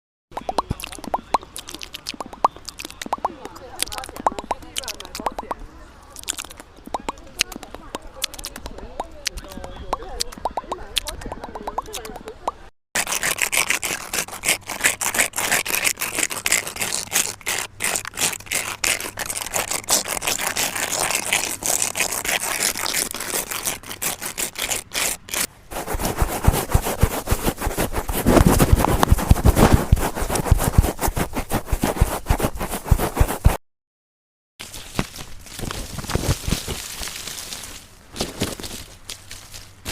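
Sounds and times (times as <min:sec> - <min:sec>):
fast scratching on a surface: 0:00.4 - 0:05.6, 0:06.2 - 0:12.3, 0:13.0 - 0:33.6.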